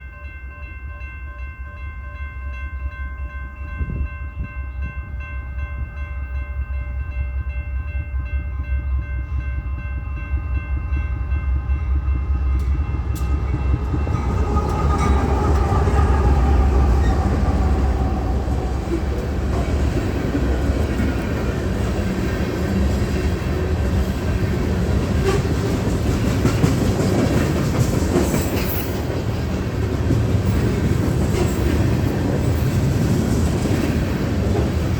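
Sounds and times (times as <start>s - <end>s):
train rumble and wheel clatter: 0.0s - 34.9s
train horn: 25.0s - 26.0s.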